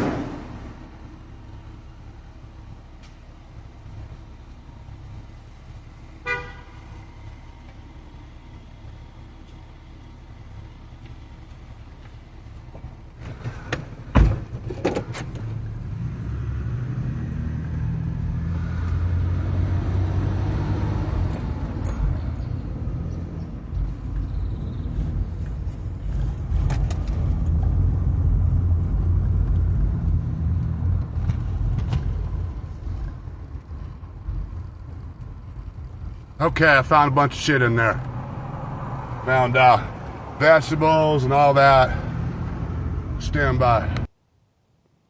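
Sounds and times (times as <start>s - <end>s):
car engine running: 20.0s - 44.0s.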